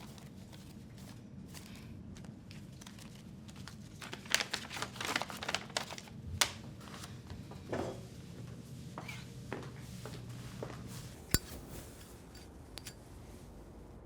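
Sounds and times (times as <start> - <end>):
low steady hum: 6.1 - 14.0.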